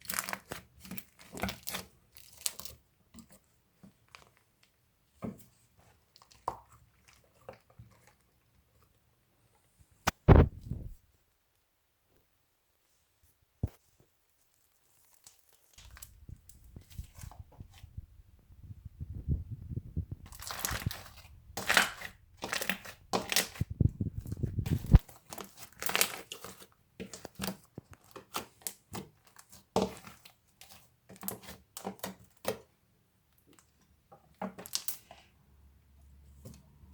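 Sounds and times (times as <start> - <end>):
low rumble: 17.4 - 20.4, 23.6 - 25.0
slime crackling and popping: 20.2 - 26.5.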